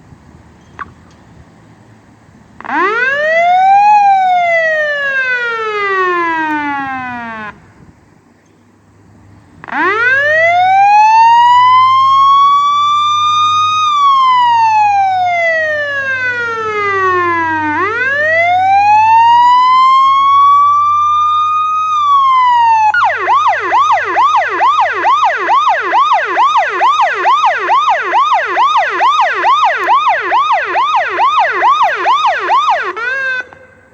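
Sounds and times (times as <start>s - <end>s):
electronic siren wailing: 2.6s - 7.7s, 9.6s - 33.9s
siren fast yelp: 9.8s - 33.9s.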